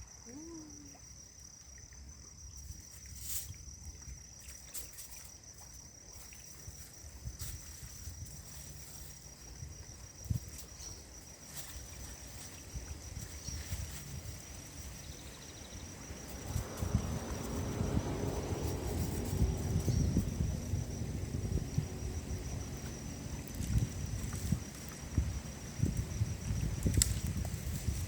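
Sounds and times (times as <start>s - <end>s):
insect trilling: 6.1s - 28.0s
wind on microphone: 6.6s - 11.2s, 11.8s - 28.0s.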